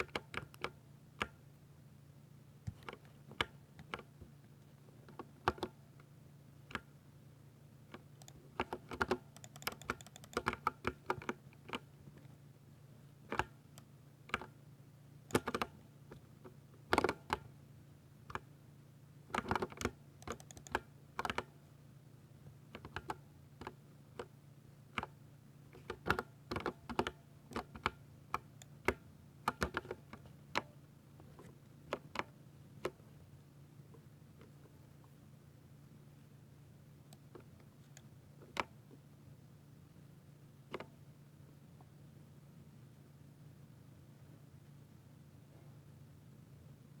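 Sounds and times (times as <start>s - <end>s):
mechanical keyboard typing: 0.0s - 1.4s, 8.0s - 11.9s, 15.3s - 15.8s, 19.3s - 21.5s
faint low hum: 0.0s - 47.0s.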